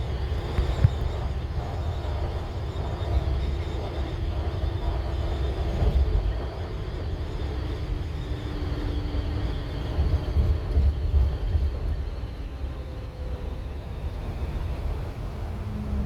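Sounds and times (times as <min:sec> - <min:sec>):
engine and road rumble: 0:09.9 - 0:16.0.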